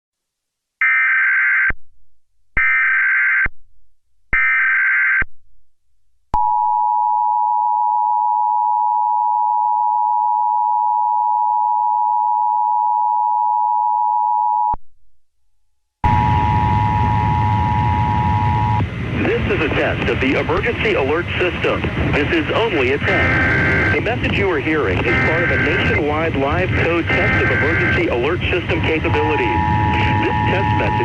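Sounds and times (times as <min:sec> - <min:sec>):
two-tone attention signal: 0:16.0 - 0:18.8, 0:23.0 - 0:24.0, 0:25.1 - 0:26.0, 0:26.8 - 0:31.0
warbling data tones: 0:16.0 - 0:19.4, 0:22.2 - 0:31.0.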